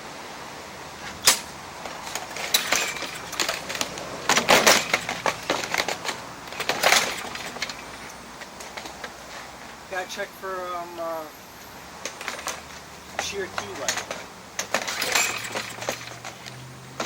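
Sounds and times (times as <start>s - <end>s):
metal parts and tools clattering: 1.2s - 9.0s, 12.0s - 17.0s.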